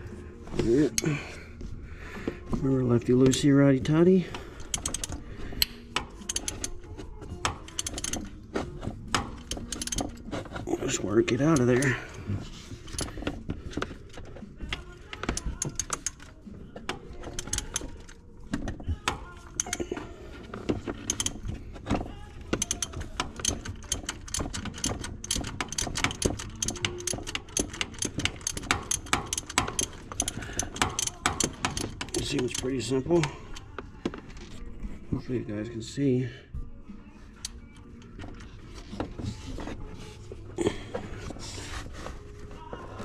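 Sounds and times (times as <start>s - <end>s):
hand ratchet clicking: 3.1s - 33.8s.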